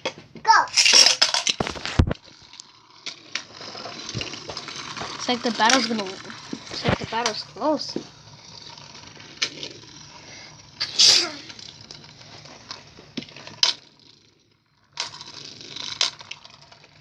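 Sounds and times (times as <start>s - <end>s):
spinning tops whirring: 0.5s - 17.0s
spinning tops clicking together: 0.7s - 17.0s.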